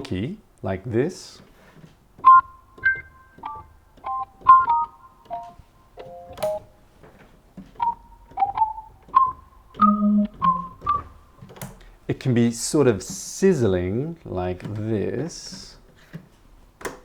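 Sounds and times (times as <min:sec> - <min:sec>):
staccato organ melody: 0:02.2 - 0:06.7, 0:07.8 - 0:11.4.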